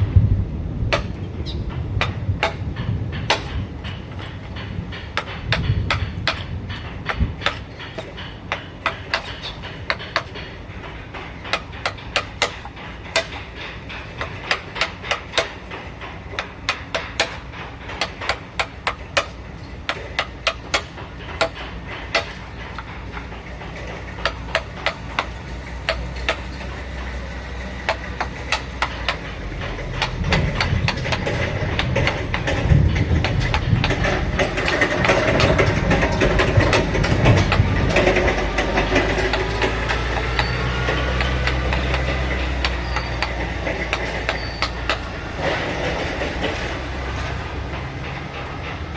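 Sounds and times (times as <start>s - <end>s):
low machine rumble: 0.0s - 48.9s
hammer tapping on wood: 0.9s - 27.2s, 27.8s - 45.5s.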